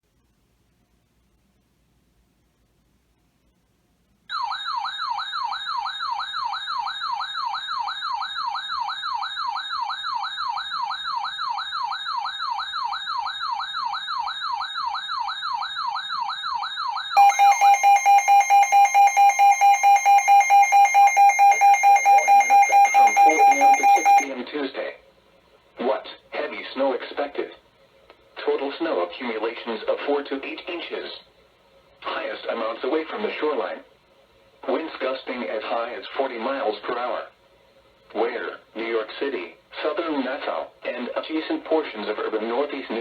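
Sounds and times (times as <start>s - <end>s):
alarm tone beeping rapidly: 17.2s - 24.3s
electronic siren warbling: 17.2s - 24.3s.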